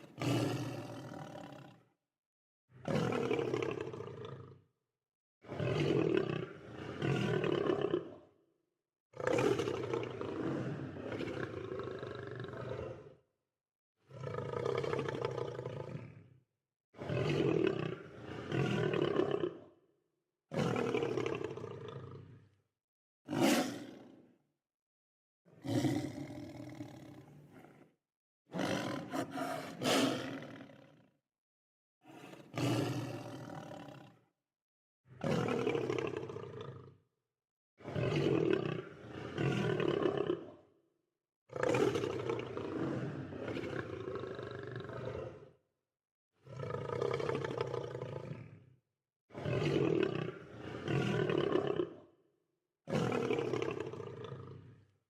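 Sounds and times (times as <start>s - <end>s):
lion roaring: 0.0s - 1.8s, 14.1s - 16.2s, 23.3s - 24.0s, 25.6s - 27.9s, 28.5s - 31.0s, 32.1s - 34.2s, 35.2s - 36.9s, 37.8s - 40.6s, 41.6s - 45.5s, 46.4s - 48.6s.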